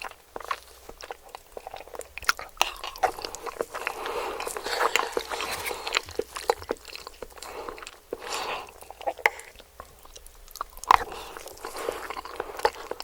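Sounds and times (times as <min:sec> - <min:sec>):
crunchy chewing of fried chicken: 0:00.0 - 0:13.0
mouth clicks: 0:01.4 - 0:13.0.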